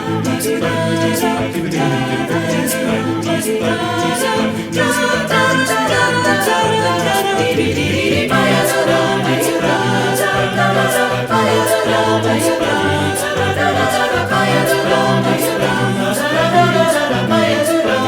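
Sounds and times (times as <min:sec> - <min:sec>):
choir singing in harmony: 0:00.0 - 0:18.0.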